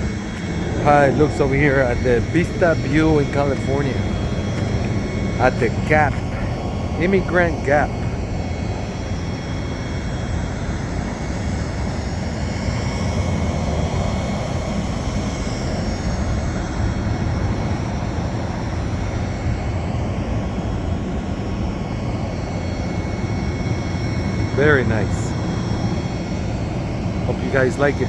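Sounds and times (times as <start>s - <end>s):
highway traffic rushing past: 0.0s - 8.2s.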